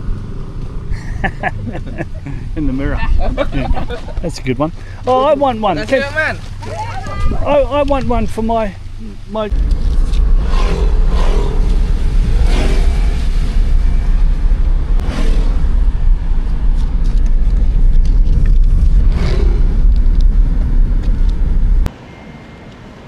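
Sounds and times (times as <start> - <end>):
low rumble of a moving car: 0.0 - 22.0
faint passing sounds: 9.5 - 22.9.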